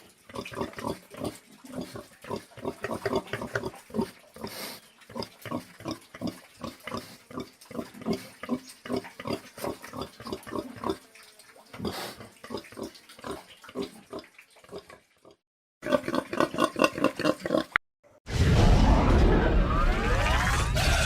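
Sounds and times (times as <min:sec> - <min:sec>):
pig grunting: 0:00.0 - 0:11.0.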